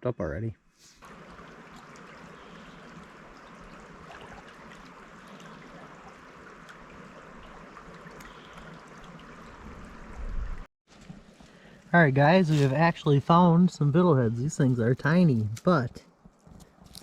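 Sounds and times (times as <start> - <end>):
stream rushing: 1.0 - 10.7.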